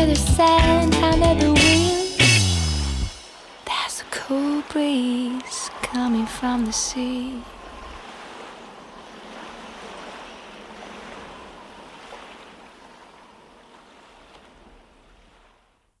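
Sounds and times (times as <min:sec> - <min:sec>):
ocean waves washing: 0:01.8 - 0:15.7.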